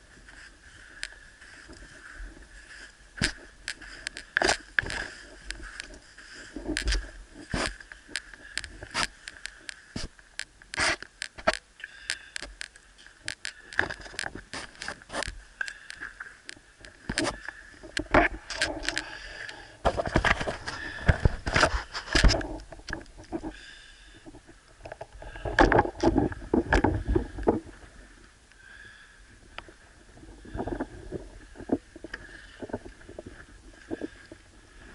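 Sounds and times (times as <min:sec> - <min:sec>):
underwater clicks and knocks: 0:12.4 - 0:23.6, 0:24.2 - 0:27.8.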